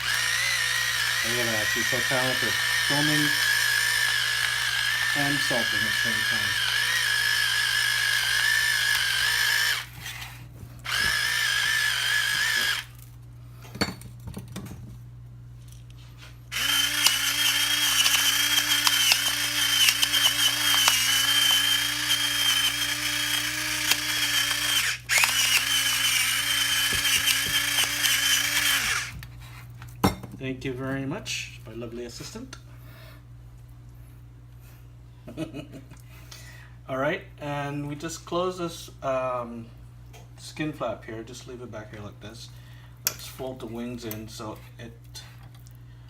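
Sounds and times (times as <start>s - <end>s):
electric grinder running: 0.0s - 10.3s, 10.9s - 13.0s, 16.5s - 29.2s.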